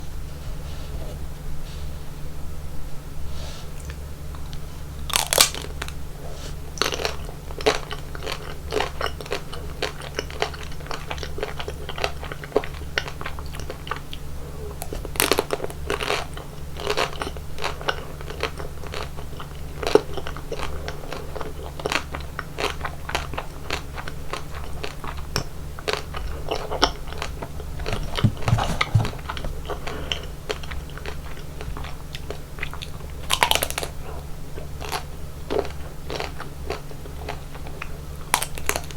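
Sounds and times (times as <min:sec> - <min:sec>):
steady low hum: 0:00.0 - 0:09.8, 0:20.7 - 0:38.9
crunchy chewing of ice cream: 0:03.4 - 0:38.9.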